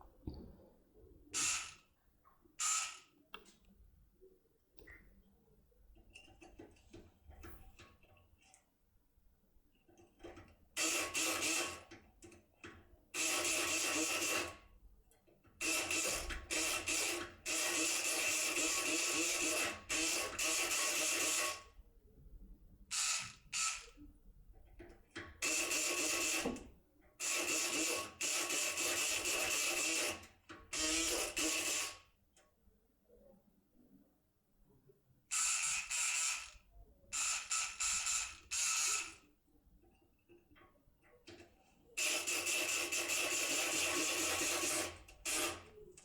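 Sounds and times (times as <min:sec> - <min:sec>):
electric pick gun buzzing: 0:01.4 - 0:01.8, 0:22.9 - 0:23.9, 0:35.3 - 0:36.6, 0:37.2 - 0:39.2.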